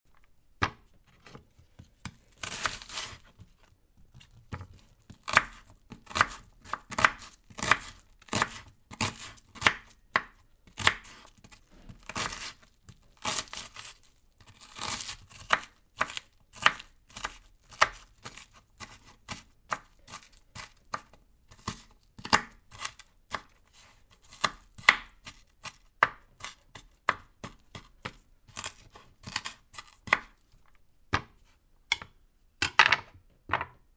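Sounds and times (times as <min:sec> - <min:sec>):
knife chopping on cutting board: 0:00.6 - 0:12.6, 0:14.5 - 0:30.4, 0:31.1 - 0:33.8
knife scraping: 0:02.0 - 0:03.5.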